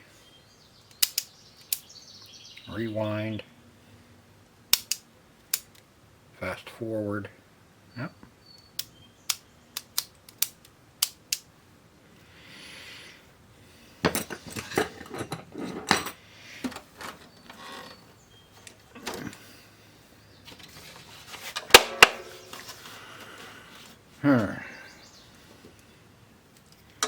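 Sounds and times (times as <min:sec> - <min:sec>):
sharp clicks: 0:00.9 - 0:01.9, 0:04.7 - 0:05.9, 0:08.6 - 0:11.5
metal tools clinking: 0:14.0 - 0:16.2.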